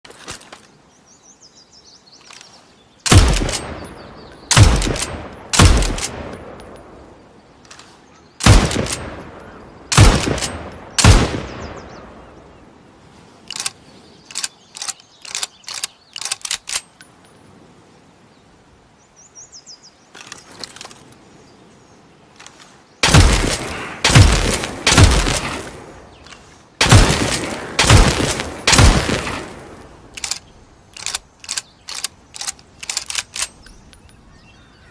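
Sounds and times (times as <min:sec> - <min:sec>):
bird-like chirps: 0:00.9 - 0:03.1, 0:13.6 - 0:17.0
rifle action metallic clicks: 0:02.2 - 0:06.8, 0:07.6 - 0:09.2, 0:13.5 - 0:17.1, 0:30.1 - 0:34.2
rifle shots echoing: 0:03.1 - 0:06.8, 0:08.4 - 0:12.0, 0:23.0 - 0:25.9, 0:26.8 - 0:30.4.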